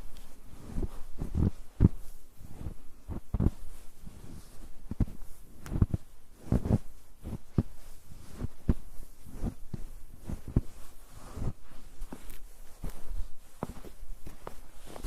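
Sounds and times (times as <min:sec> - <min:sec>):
footsteps crunching in snow: 0:00.0 - 0:15.0.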